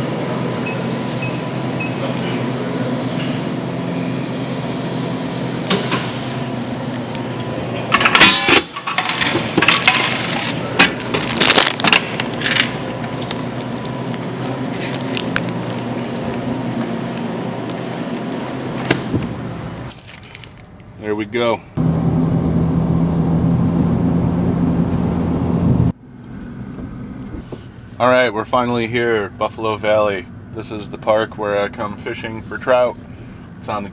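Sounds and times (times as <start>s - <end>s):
plastic packaging crinkling: 11.1s - 12.0s, 19.9s - 20.7s.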